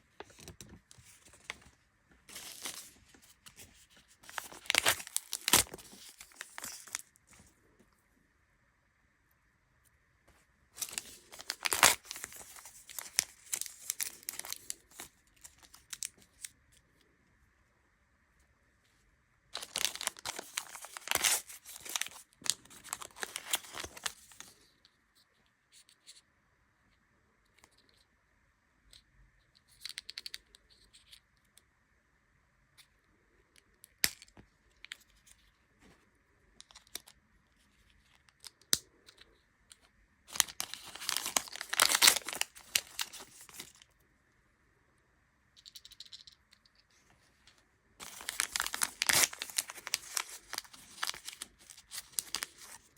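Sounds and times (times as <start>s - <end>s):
plastic wrappers crinkling and tearing: 2.3s - 7.2s, 10.8s - 16.5s, 19.6s - 24.6s, 40.3s - 43.9s, 48.0s - 52.9s.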